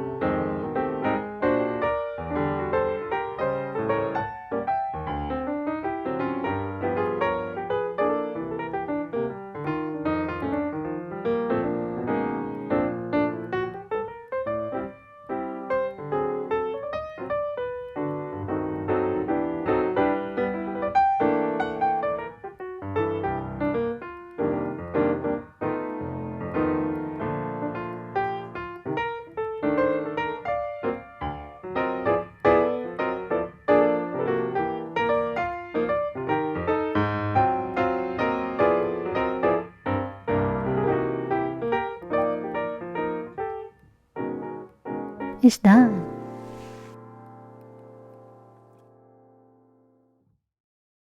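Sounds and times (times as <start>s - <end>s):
piano music: 0.0s - 24.0s.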